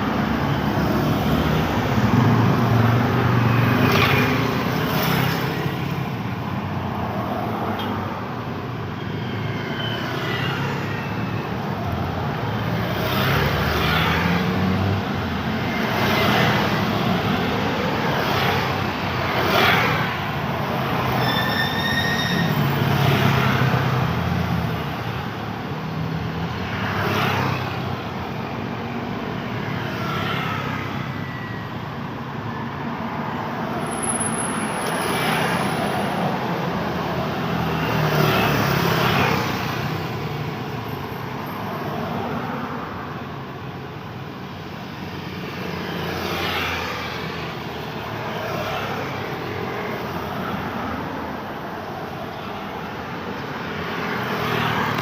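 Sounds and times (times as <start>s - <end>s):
cars and motorcycles passing: 0.0s - 21.2s, 22.6s - 55.0s
steady traffic hum: 0.0s - 55.0s.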